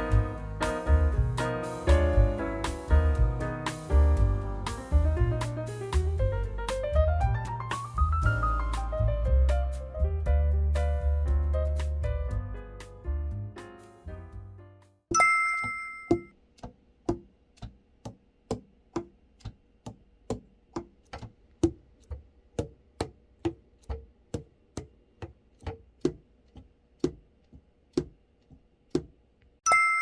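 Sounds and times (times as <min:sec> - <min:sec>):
sharp metallic clink: 0:29.7 - 0:30.0.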